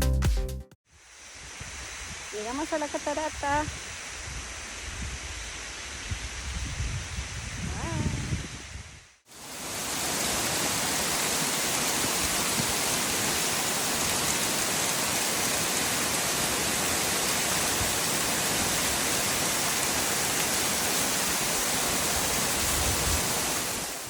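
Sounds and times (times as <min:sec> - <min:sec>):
rushing water: 0:09.3 - 0:24.0.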